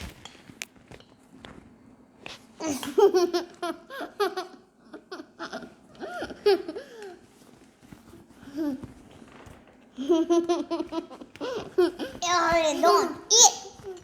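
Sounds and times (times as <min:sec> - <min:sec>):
young child laughing and babbling: 0:11.4 - 0:14.0.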